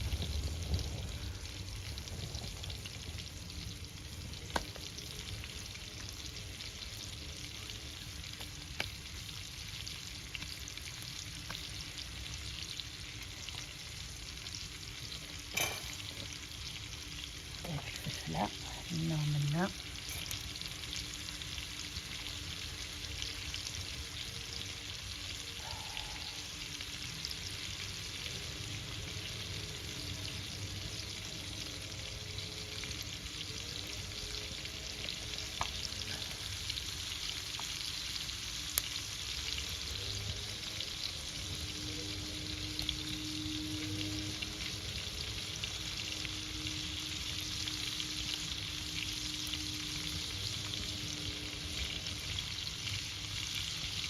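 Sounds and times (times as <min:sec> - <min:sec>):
fire crackles and pops: 0:00.0 - 0:18.6, 0:27.0 - 0:41.8
food sizzling in hot oil: 0:00.0 - 0:54.0.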